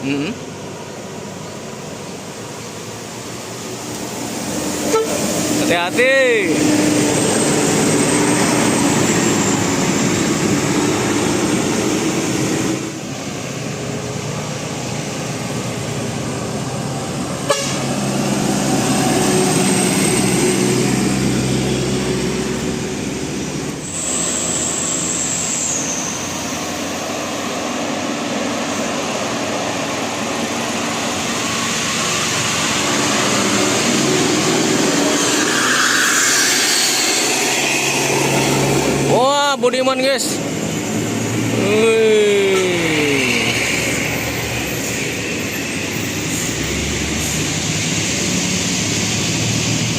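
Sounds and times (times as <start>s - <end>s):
large vehicles passing: 0.0s - 49.9s
vehicle horns long tones: 4.8s - 5.4s, 17.4s - 18.0s.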